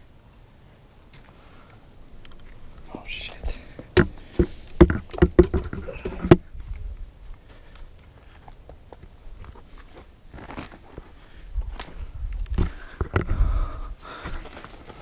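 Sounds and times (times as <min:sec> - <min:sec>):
sharp crunches and knocks: 0:08.9 - 0:11.1.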